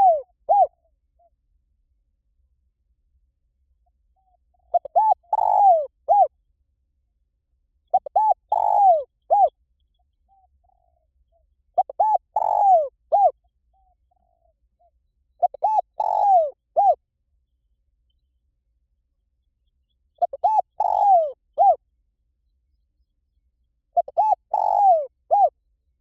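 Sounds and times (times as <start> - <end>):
dove cooing: 0.0 - 0.8, 4.6 - 6.3, 7.9 - 9.6, 11.8 - 14.6, 15.4 - 17.0, 20.2 - 21.8, 24.0 - 25.6.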